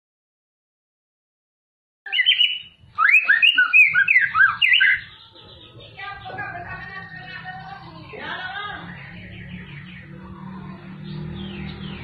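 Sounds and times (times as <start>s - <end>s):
bird singing whistled notes: 2.1s - 5.2s.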